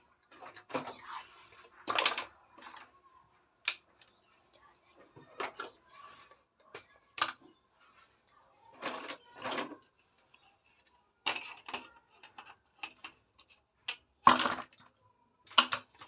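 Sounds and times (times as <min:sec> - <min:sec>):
plastic toy pieces clicking: 0:11.2 - 0:14.8, 0:15.5 - 0:16.0.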